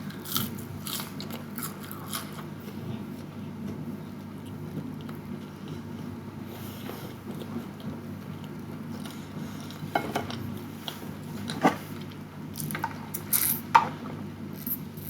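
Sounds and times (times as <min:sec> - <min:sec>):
person eating: 0:00.0 - 0:02.5.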